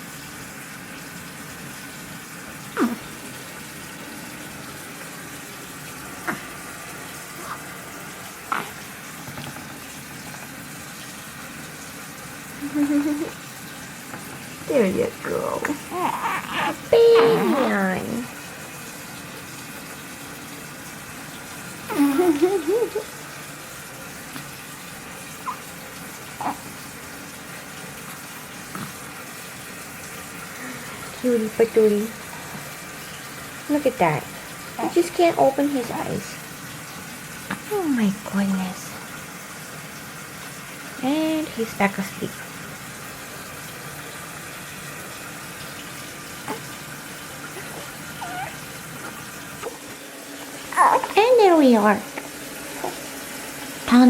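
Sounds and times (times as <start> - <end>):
baby hiccuping: 2.8 - 3.0, 15.9 - 17.7, 50.7 - 51.2.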